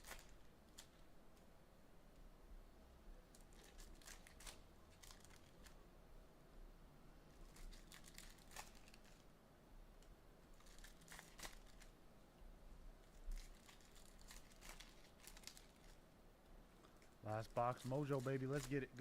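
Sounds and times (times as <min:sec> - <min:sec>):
plastic wrapping crinkling: 0:00.0 - 0:01.1, 0:03.4 - 0:05.8, 0:07.3 - 0:09.3, 0:10.5 - 0:11.9, 0:13.0 - 0:16.0, 0:16.7 - 0:19.0.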